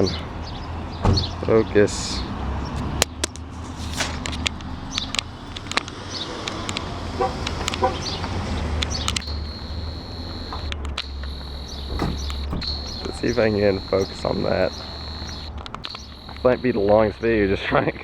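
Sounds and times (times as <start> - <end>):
bird calls: 0.0 - 17.8
light clicks: 3.0 - 16.7
insect buzz: 5.8 - 17.0
steady low hum: 8.0 - 17.6.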